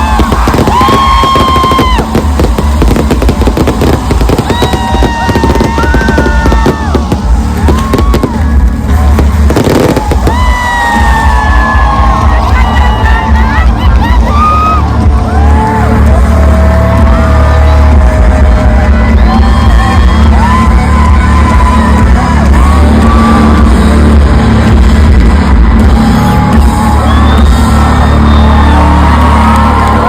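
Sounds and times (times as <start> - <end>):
crowd singing along and whooping: 0.0 - 8.4, 9.0 - 23.6
loud live concert music: 0.0 - 30.0.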